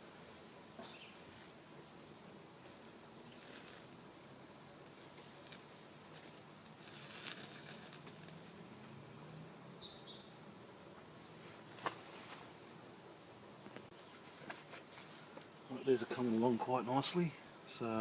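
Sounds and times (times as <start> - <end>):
fire popping: 0.0 - 10.3, 10.9 - 17.3
chicken sizzling on a grill: 0.0 - 10.8
wood fire crackling: 0.0 - 18.0.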